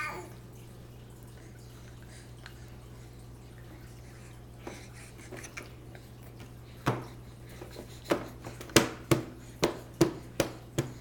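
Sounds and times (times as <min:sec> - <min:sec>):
child smacking arm: 0:06.4 - 0:11.0.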